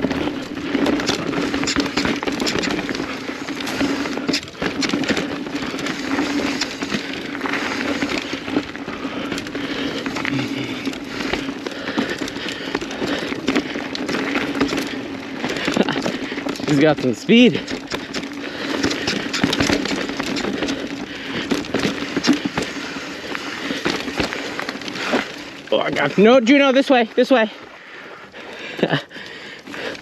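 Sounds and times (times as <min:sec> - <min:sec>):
steady low hum: 0:00.0 - 0:02.0
bike rattling with sharp clicks: 0:00.0 - 0:27.4.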